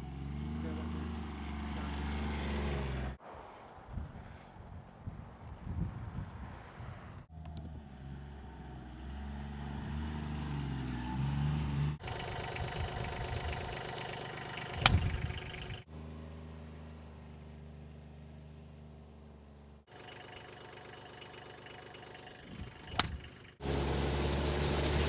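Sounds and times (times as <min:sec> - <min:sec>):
utility vehicle engine revving: 0:00.0 - 0:03.2, 0:07.3 - 0:16.6, 0:19.9 - 0:25.0.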